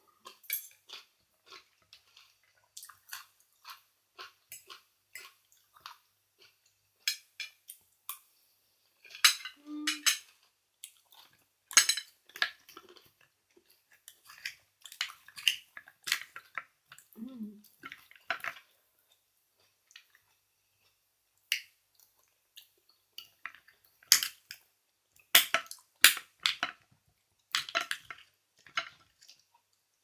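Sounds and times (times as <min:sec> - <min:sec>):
wet chewing and slurping: 0:00.2 - 0:06.7
cutlery and shells clinking on dishes: 0:00.4 - 0:00.9, 0:07.0 - 0:08.3, 0:09.1 - 0:10.4, 0:11.7 - 0:12.9, 0:14.2 - 0:16.6, 0:23.2 - 0:24.6, 0:27.5 - 0:29.1.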